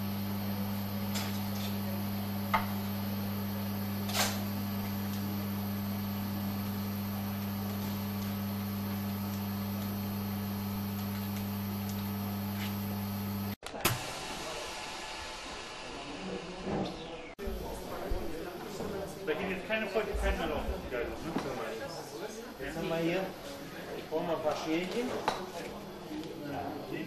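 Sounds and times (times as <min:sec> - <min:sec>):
low electrical hum: 0:00.0 - 0:13.6.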